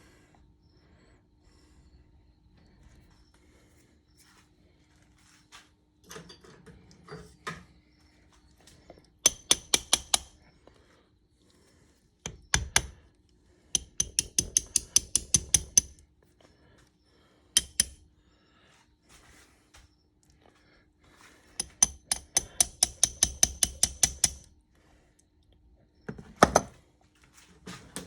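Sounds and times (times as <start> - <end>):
metal-on-metal taps: 9.2 - 10.3, 12.3 - 13.0, 13.8 - 16.0, 17.6 - 18.0, 21.6 - 24.5.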